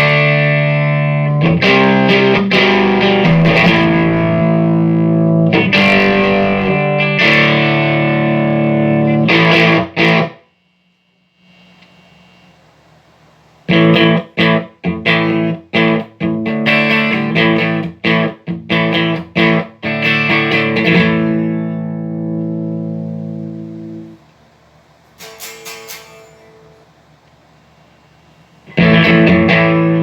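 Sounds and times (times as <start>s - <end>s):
electric guitar chords: 0.0s - 10.4s, 13.7s - 24.2s, 28.7s - 30.0s.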